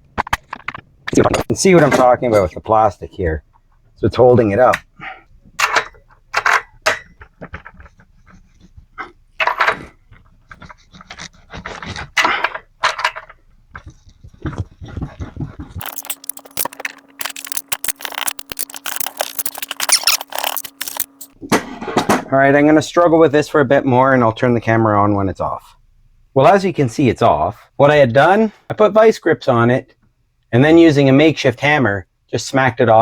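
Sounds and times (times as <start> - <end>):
steady low hum: 7.3 - 21.4
metal tools clicking and scraping: 15.8 - 21.4.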